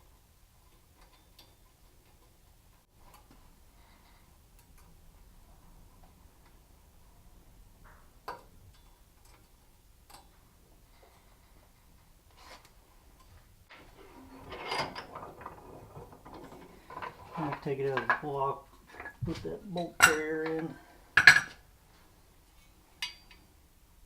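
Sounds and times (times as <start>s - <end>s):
metallic clatter of tools: 13.2s - 18.4s.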